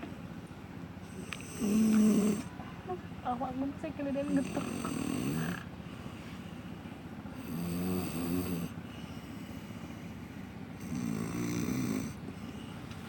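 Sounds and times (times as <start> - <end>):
person snoring: 1.1 - 2.5, 4.2 - 5.7, 7.4 - 8.8, 10.8 - 12.2.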